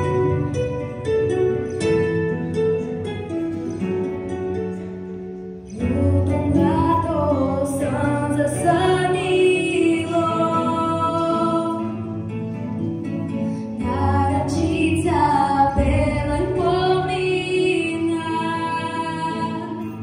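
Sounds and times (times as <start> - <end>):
plucked string accompaniment: 0.0 - 20.0
girl singing: 5.8 - 12.1, 13.8 - 20.0.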